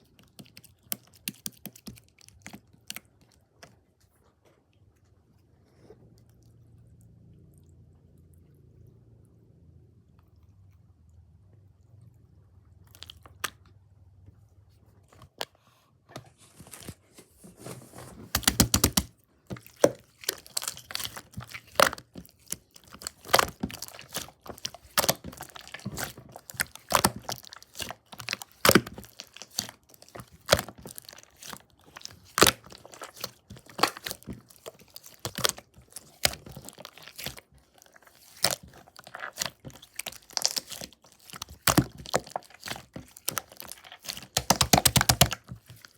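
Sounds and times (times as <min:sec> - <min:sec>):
crunchy crackling material squeezed: 0:18.2 - 0:45.9.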